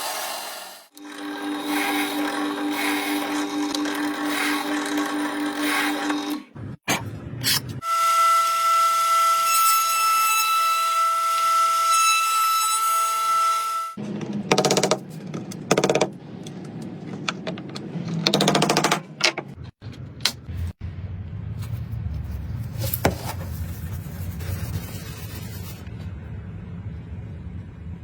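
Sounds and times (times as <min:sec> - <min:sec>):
steady low hum: 0:19.7 - 0:28.0.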